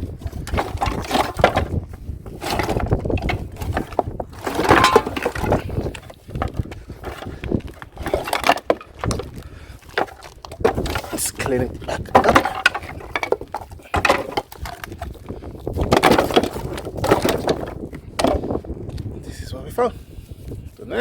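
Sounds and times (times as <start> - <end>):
scrap knocking and clinking: 2.4 - 7.4, 9.9 - 15.0.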